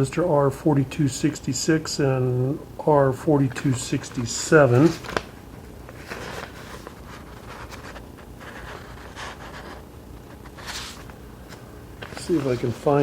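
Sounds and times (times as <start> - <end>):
steady low hum: 0.0 - 13.0
soft handling rustles and scrapes: 3.5 - 13.0.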